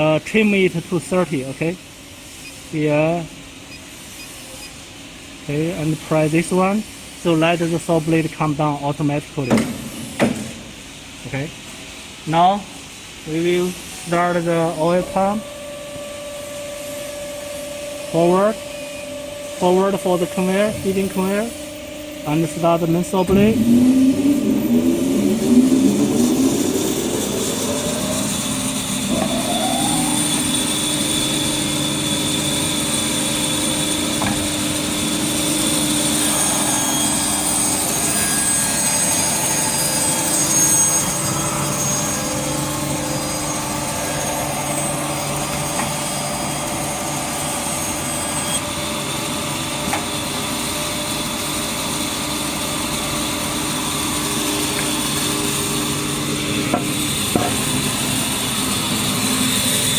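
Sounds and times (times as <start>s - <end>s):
feed conveyor running: 9.4s - 59.9s
saw blade whine: 13.3s - 59.9s
band saw running: 14.1s - 59.9s.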